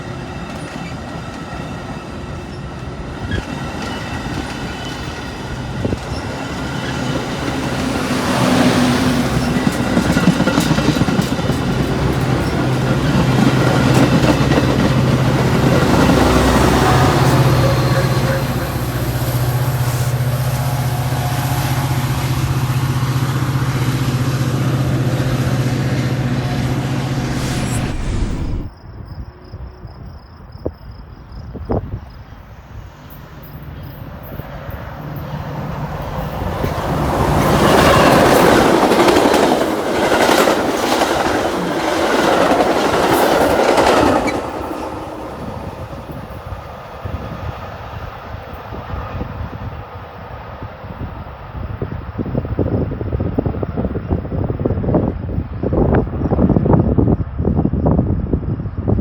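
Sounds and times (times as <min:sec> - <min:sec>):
train wheels clicking on rails: 0:00.0 - 0:17.8, 0:33.1 - 0:47.6
diesel locomotive droning: 0:00.0 - 0:28.7.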